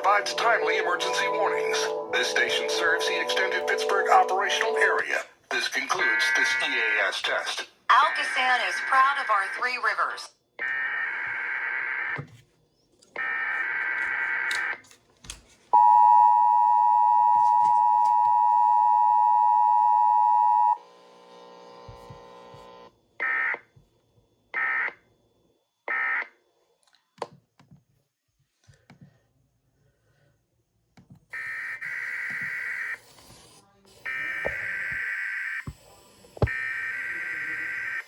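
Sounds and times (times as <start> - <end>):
two-tone attention signal: 15.8 - 20.8.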